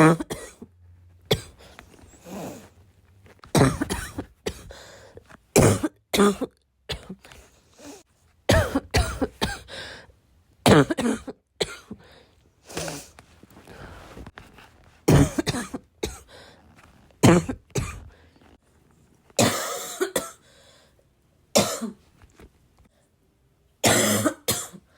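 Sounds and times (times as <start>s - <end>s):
person coughing: 0.0s - 0.6s, 3.5s - 4.8s, 5.6s - 7.3s, 8.5s - 9.8s, 10.7s - 12.0s, 15.1s - 16.3s, 17.2s - 18.1s, 19.4s - 20.4s, 21.6s - 22.0s, 23.8s - 24.9s.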